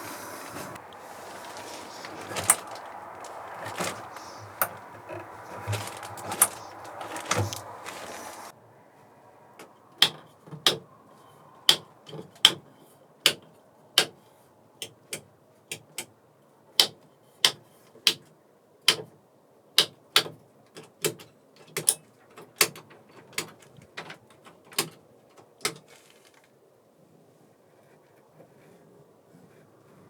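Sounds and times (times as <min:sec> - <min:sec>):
sharp clicks and knocks: 0:01.8 - 0:07.8, 0:09.6 - 0:10.8, 0:19.8 - 0:26.0.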